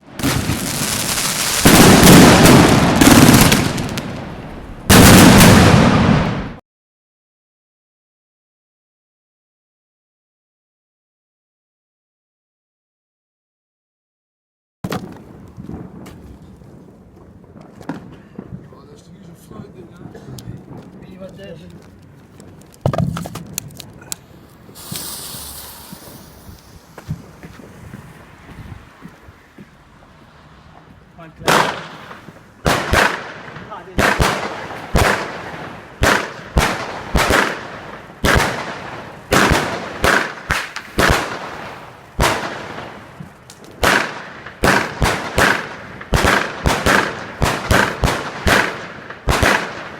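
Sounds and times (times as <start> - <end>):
fireworks crackling and banging: 0.0 - 6.6, 14.8 - 49.9
fireworks hissing spray: 0.4 - 4.0, 24.1 - 28.4.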